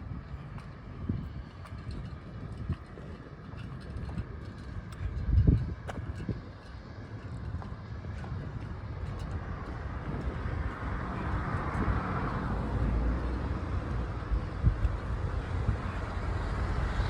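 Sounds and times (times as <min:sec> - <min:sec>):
road traffic rumble: 0:00.0 - 0:17.0
vehicle passing: 0:08.2 - 0:17.0.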